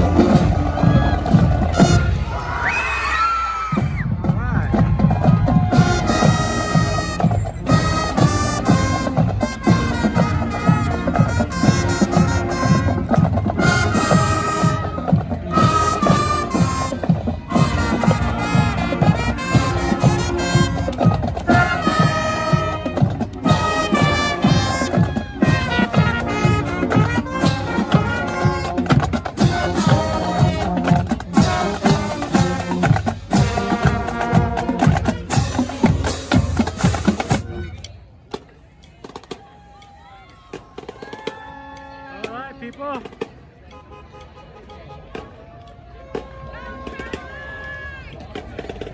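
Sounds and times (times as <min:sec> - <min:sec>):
drum beat: 0:00.0 - 0:02.4, 0:03.7 - 0:37.7
marching band playing: 0:00.0 - 0:39.4, 0:40.5 - 0:48.9.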